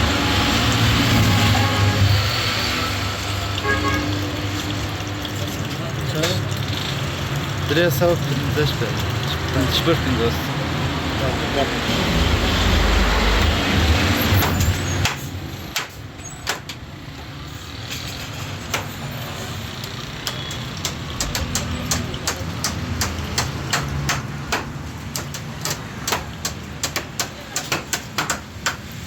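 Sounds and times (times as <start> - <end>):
sharp clicks and knocks: 14.4 - 16.9, 17.9 - 19.2, 19.8 - 29.0.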